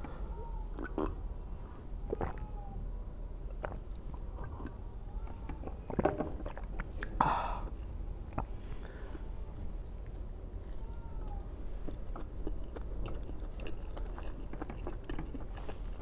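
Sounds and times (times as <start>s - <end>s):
person chewing food: 3.5s - 4.8s, 10.1s - 16.0s.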